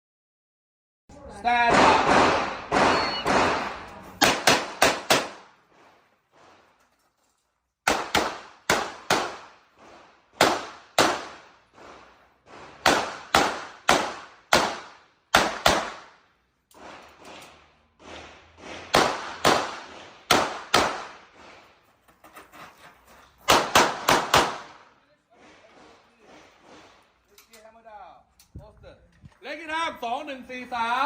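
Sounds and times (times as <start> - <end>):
handgun shots echoing: 1.6 - 5.5, 10.4 - 11.5.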